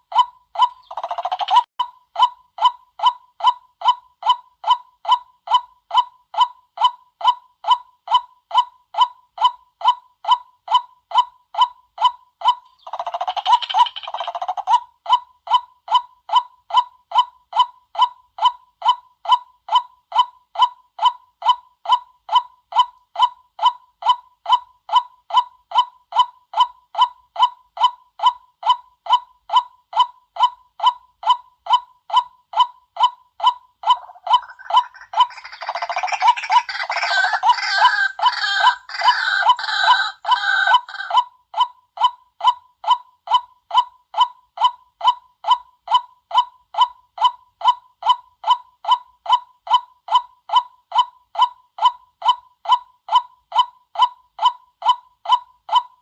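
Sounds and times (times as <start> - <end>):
waterhen call: 33.9 - 41.2.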